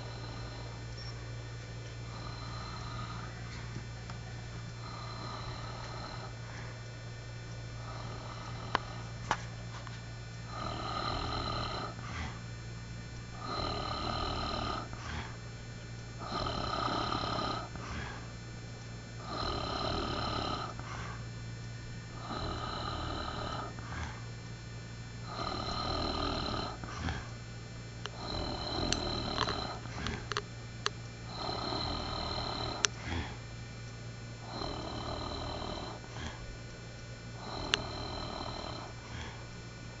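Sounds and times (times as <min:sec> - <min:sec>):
man snoring: 0:00.0 - 0:00.8, 0:02.0 - 0:03.4, 0:04.8 - 0:06.7, 0:07.8 - 0:09.1, 0:10.5 - 0:12.4, 0:13.3 - 0:15.4, 0:16.2 - 0:18.3, 0:19.2 - 0:21.2, 0:22.1 - 0:24.3, 0:25.2 - 0:27.3, 0:28.0 - 0:30.4, 0:31.3 - 0:33.4, 0:34.4 - 0:36.5, 0:37.4 - 0:39.5
steady low hum: 0:00.0 - 0:40.0.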